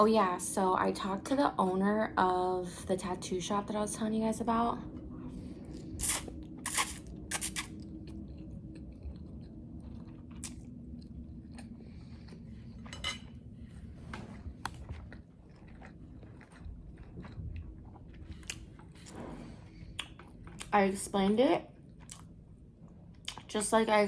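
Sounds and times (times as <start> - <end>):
person chewing food: 4.9 - 19.1, 19.7 - 20.7, 21.8 - 23.5
crunchy bites: 6.0 - 7.8
wet mouth clicks: 6.0 - 7.8.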